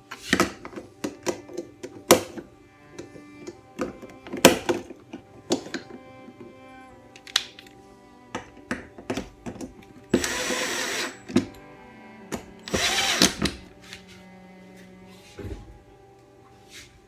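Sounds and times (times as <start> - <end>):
power drill driving screws: 10.1 - 11.4, 12.4 - 13.6.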